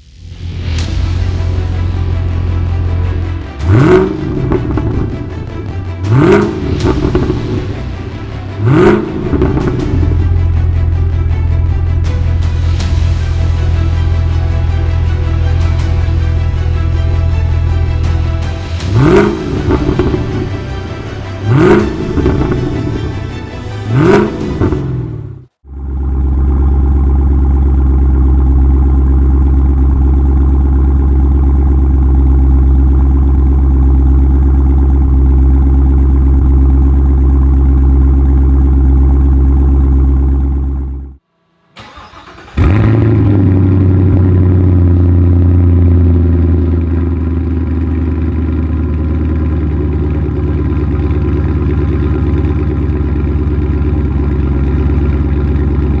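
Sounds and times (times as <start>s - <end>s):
car engine idling: 0.0s - 56.0s
engine rev flare: 0.0s - 56.0s
engine cranking: 2.8s - 14.2s, 17.4s - 25.1s, 41.8s - 45.3s.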